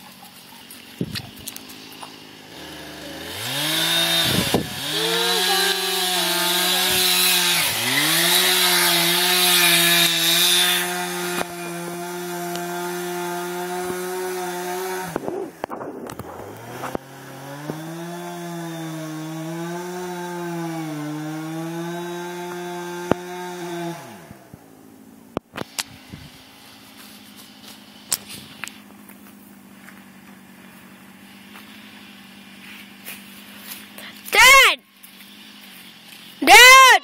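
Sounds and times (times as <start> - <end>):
faint steady engine note: 0.0 - 7.1, 22.4 - 36.5
chainsaw cutting wood at high revs: 1.0 - 24.6.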